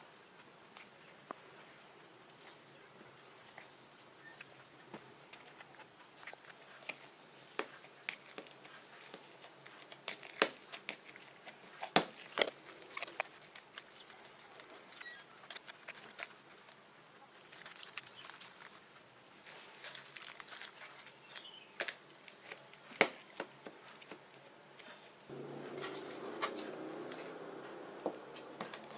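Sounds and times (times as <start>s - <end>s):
sticky clicks and crackling pops: 4.4s - 24.2s.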